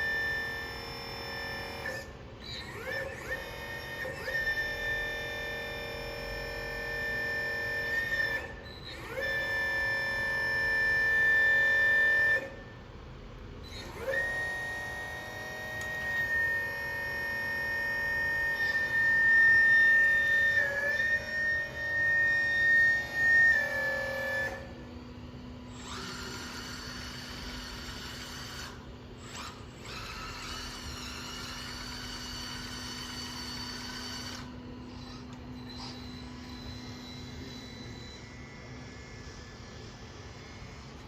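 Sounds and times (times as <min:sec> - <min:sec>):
hydraulic pump motor whining: 0:00.0 - 0:41.0.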